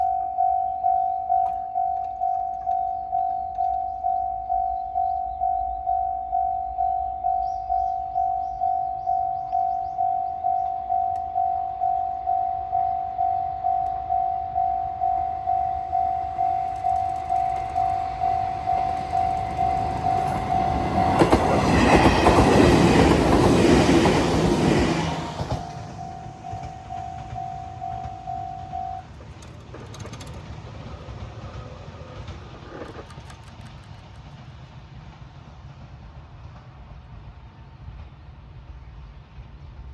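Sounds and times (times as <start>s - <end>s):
level-crossing warning bell: 0.0s - 30.3s
electric train passing: 0.0s - 39.9s.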